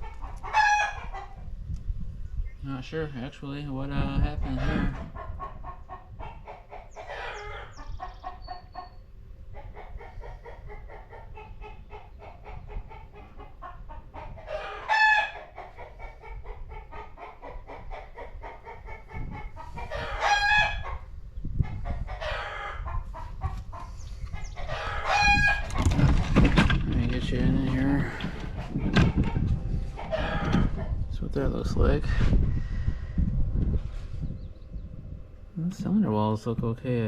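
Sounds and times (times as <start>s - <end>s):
chickens clucking: 0.0s - 1.7s, 3.9s - 32.6s
rooster crowing: 14.5s - 15.4s, 19.8s - 21.0s, 22.2s - 22.9s, 24.7s - 25.7s, 30.0s - 30.8s.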